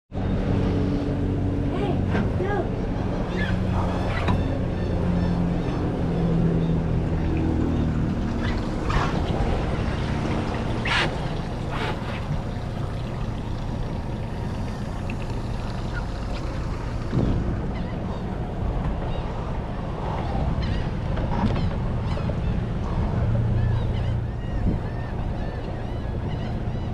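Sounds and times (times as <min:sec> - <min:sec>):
boat motor hum: 0:00.1 - 0:26.9
water noise: 0:00.1 - 0:26.9
wind noise: 0:24.4 - 0:25.6.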